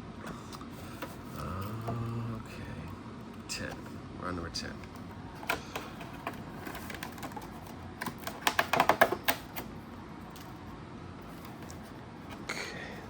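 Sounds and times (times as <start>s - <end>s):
packaging clicking and crackling: 4.8s - 10.6s.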